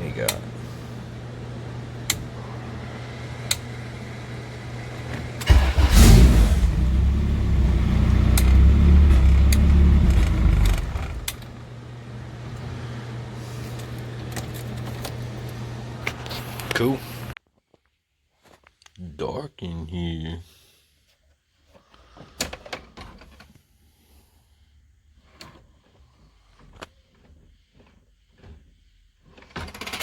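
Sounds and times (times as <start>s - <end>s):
car engine cranking and running: 0.0s - 17.3s
switches clicking: 3.4s - 3.8s, 8.3s - 11.6s.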